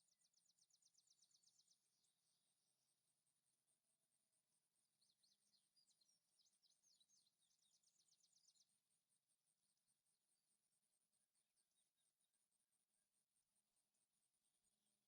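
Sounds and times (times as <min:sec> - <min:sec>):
small bird singing: 0:00.0 - 0:03.5, 0:04.3 - 0:09.5, 0:11.4 - 0:12.8.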